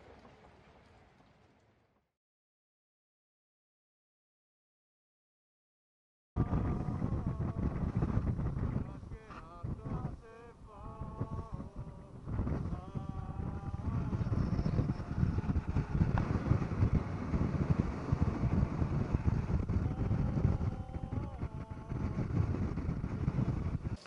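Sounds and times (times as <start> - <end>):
motorboat engine rumble: 6.4 - 24.0
voices: 6.4 - 24.0
wind on microphone: 6.4 - 24.0.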